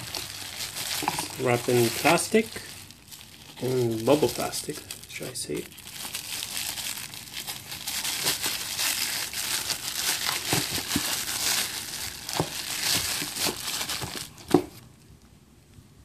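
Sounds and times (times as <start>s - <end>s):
plastic film crinkling: 0.0s - 14.9s.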